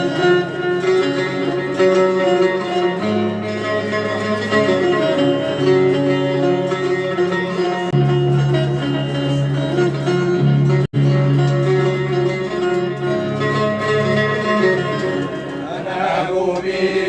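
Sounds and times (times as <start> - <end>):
plucked string instruments: 0.0 - 17.0
person singing: 15.6 - 17.0.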